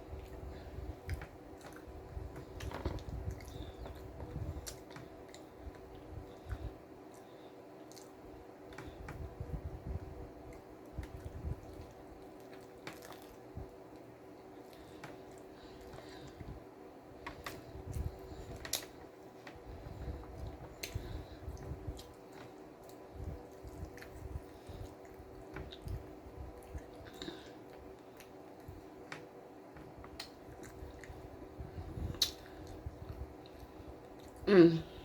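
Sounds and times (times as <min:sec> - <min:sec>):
person chewing: 0:10.5 - 0:16.5, 0:32.0 - 0:34.4
wet mouth sounds: 0:32.0 - 0:34.8.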